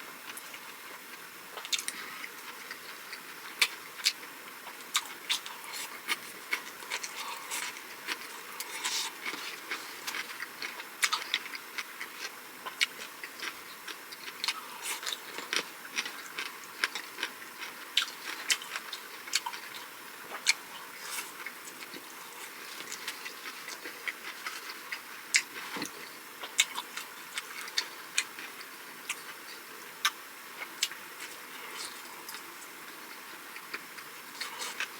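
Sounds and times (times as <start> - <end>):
chewing and mouth smacks: 1.6 - 29.4.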